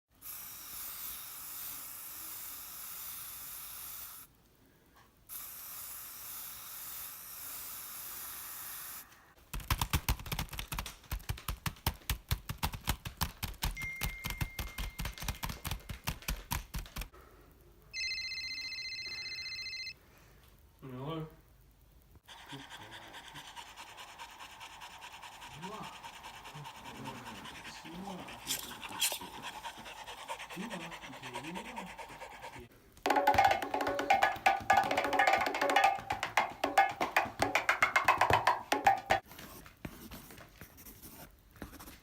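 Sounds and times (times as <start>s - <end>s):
steady hiss: 0.1s - 9.3s
hands patting a dog: 9.7s - 17.1s, 33.2s - 40.8s
steady high tone: 17.9s - 20.0s.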